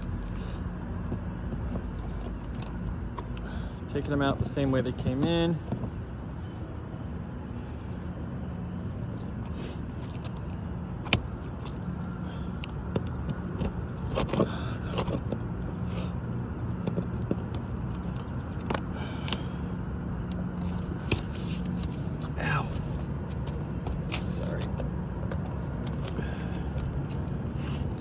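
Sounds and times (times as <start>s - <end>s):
steady low hum: 0.0s - 28.0s
hand tool prying nails: 13.3s - 15.4s.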